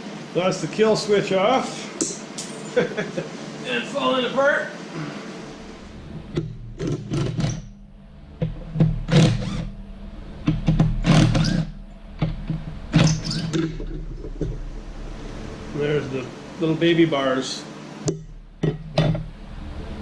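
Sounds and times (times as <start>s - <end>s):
steady low hum: 0.0s - 20.0s
metal parts handled: 2.0s - 2.8s.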